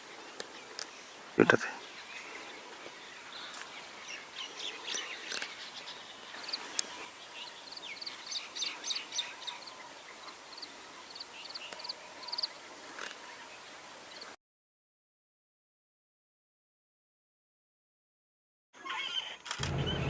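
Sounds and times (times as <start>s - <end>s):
small birds chirping: 0.0s - 14.4s.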